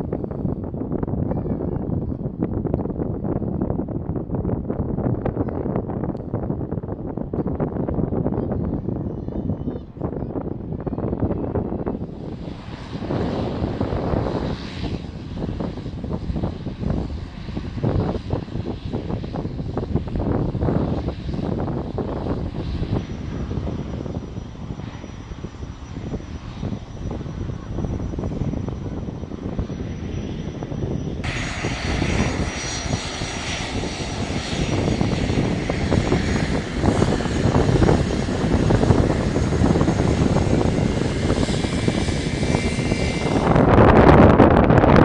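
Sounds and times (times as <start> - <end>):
airplane engine rumble: 0.0 - 45.0.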